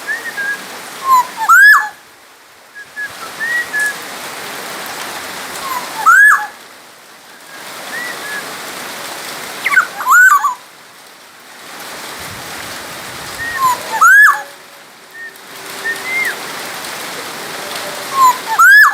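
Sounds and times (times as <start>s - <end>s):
bird whistling song: 0.0s - 1.9s, 2.8s - 4.0s, 5.6s - 6.6s, 7.3s - 8.5s, 9.6s - 10.6s, 13.4s - 16.4s, 17.6s - 18.9s
running water hiss: 0.0s - 18.9s.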